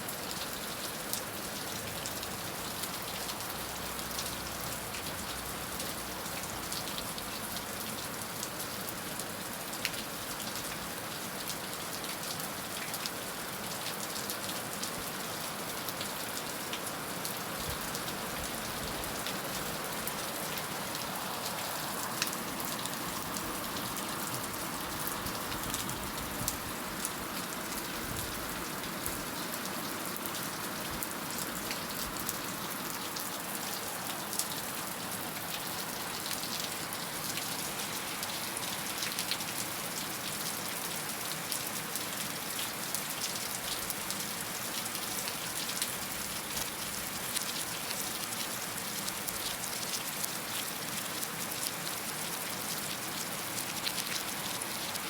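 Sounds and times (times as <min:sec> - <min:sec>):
heavy rain falling: 0:12.8 - 0:55.0.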